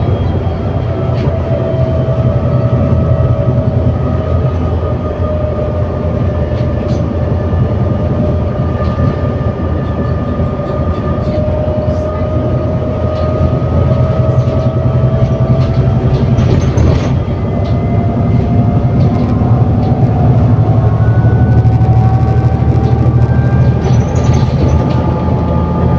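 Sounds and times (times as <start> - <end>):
bus engine rumble and whine: 0.0 - 25.9.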